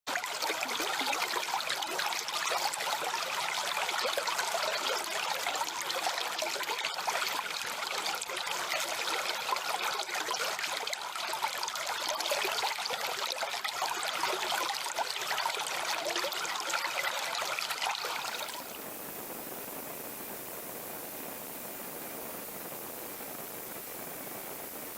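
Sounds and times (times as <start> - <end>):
stream water flowing: 0.1 - 24.9.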